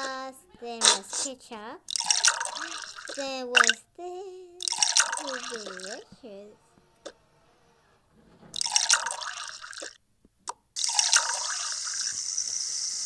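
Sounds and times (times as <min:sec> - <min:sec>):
liquid pouring: 0:01.9 - 0:03.8, 0:04.6 - 0:06.0, 0:08.6 - 0:10.0, 0:10.8 - 0:13.0.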